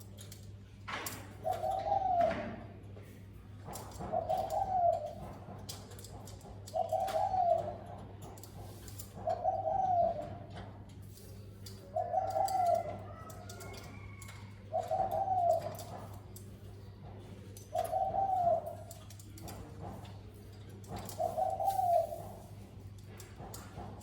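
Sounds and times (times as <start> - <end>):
dove cooing: 1.2 - 2.8, 3.7 - 10.9, 11.8 - 16.4, 17.0 - 20.0, 20.8 - 22.8.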